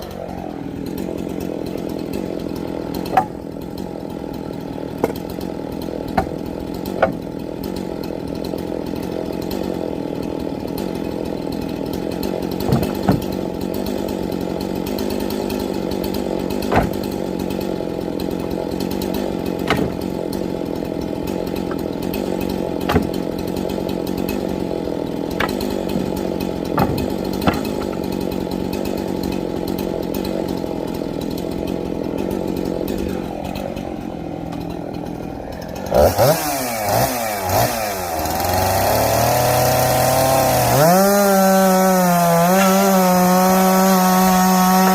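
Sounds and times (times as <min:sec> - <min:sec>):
chainsaw running: 0:00.0 - 0:44.9
sharp knocks: 0:06.1 - 0:07.2, 0:12.5 - 0:13.4, 0:16.6 - 0:17.2, 0:19.6 - 0:20.2, 0:22.8 - 0:23.4, 0:25.3 - 0:28.1.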